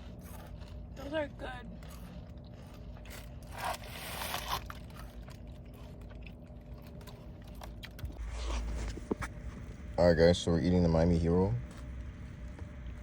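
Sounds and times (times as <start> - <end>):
chips being chewed: 0.0 - 9.0
low room hum: 0.0 - 13.0.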